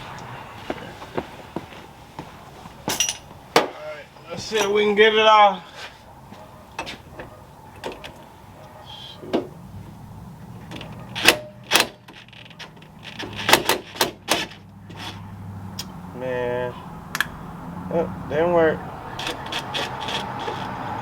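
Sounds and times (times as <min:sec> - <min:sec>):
sharp metal clicks and knocks: 0:10.6 - 0:15.2, 0:17.1 - 0:17.4.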